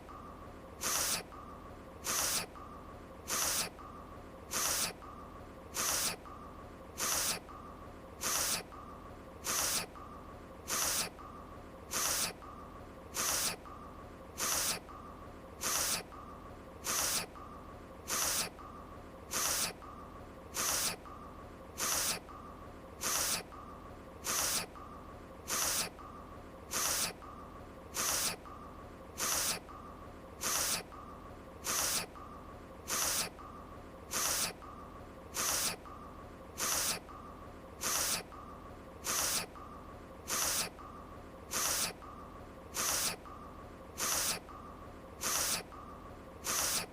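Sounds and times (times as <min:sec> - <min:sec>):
faint steady background tone: 0:00.0 - 0:46.9
sharp nose sniff: 0:00.8 - 0:01.4, 0:02.0 - 0:02.6, 0:03.3 - 0:03.8, 0:04.5 - 0:05.0, 0:05.7 - 0:06.3, 0:07.0 - 0:07.5, 0:08.2 - 0:08.8, 0:09.4 - 0:10.0, 0:10.7 - 0:11.2, 0:11.9 - 0:12.4, 0:13.1 - 0:13.7, 0:14.4 - 0:14.9, 0:15.6 - 0:16.1, 0:16.8 - 0:17.4, 0:18.1 - 0:18.6, 0:19.3 - 0:19.8, 0:20.5 - 0:21.0, 0:21.8 - 0:22.3, 0:23.0 - 0:23.5, 0:24.2 - 0:24.8, 0:25.5 - 0:26.0, 0:26.7 - 0:27.2, 0:27.9 - 0:28.5, 0:29.2 - 0:29.7, 0:30.4 - 0:31.0, 0:31.6 - 0:32.2, 0:32.9 - 0:33.4, 0:34.1 - 0:34.6, 0:35.3 - 0:35.9, 0:36.6 - 0:37.1, 0:37.8 - 0:38.4, 0:39.0 - 0:39.6, 0:40.3 - 0:40.8, 0:41.5 - 0:42.0, 0:42.7 - 0:43.3, 0:44.0 - 0:44.5, 0:45.2 - 0:45.7, 0:46.4 - 0:46.9.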